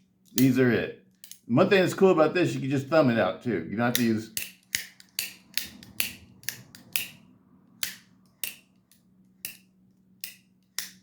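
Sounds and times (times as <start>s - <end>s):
folding knife blade clicking: 3.9s - 7.2s, 7.8s - 11.0s.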